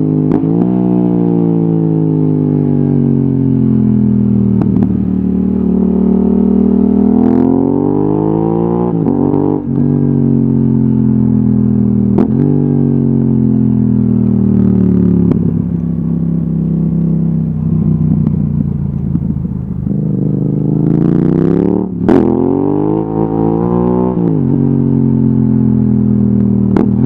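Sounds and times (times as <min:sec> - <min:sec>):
motorcycle engine revving: 0:00.0 - 0:27.0.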